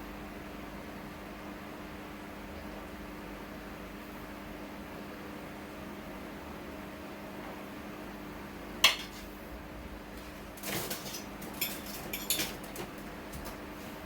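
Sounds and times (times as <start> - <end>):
utensil clinking against pot: 8.8 - 9.3, 10.6 - 13.6.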